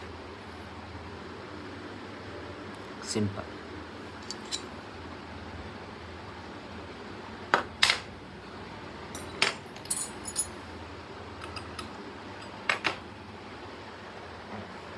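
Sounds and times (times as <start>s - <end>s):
metal parts clinking: 4.2s - 4.7s, 9.2s - 10.6s.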